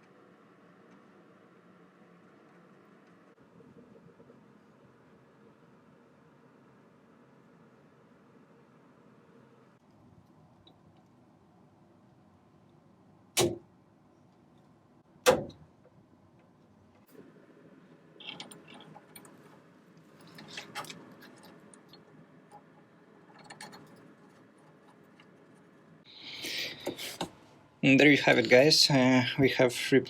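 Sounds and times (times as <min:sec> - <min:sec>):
sharp knocks: 0:13.4 - 0:13.6, 0:15.3 - 0:15.6
clinking and rustling handling noise: 0:18.2 - 0:25.9.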